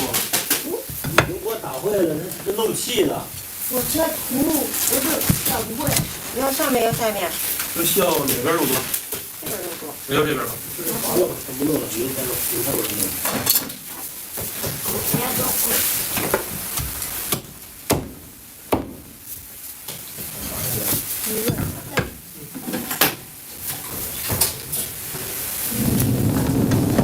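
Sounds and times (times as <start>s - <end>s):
steady hiss: 0.0s - 27.0s
cleaver chopping on a block: 17.3s - 19.0s.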